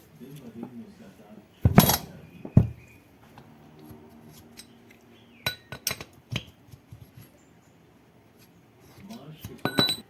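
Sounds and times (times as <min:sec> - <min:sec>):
metal tools clinking: 0:01.7 - 0:02.2, 0:09.6 - 0:10.0.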